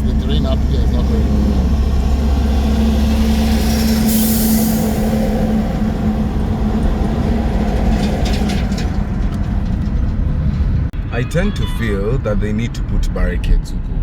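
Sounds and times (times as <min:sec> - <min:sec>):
low drone: 0:00.0 - 0:11.0
vehicle road and engine rumble: 0:00.0 - 0:14.0.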